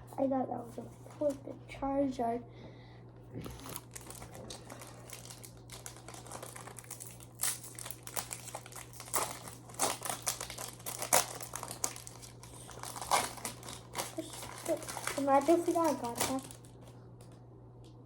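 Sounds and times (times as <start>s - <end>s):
faint low hum: 0.0s - 18.0s
foil wrappers crinkling: 3.5s - 17.3s.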